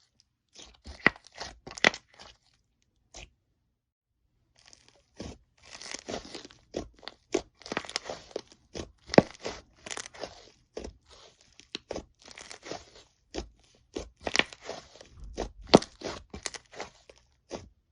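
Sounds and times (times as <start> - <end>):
crunchy slime crackling: 0.5 - 2.6, 4.6 - 17.8.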